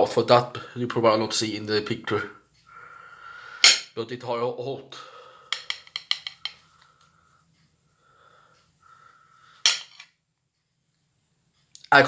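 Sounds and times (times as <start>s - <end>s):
tableware clinking: 3.6s - 3.9s, 5.6s - 6.6s, 9.7s - 10.1s.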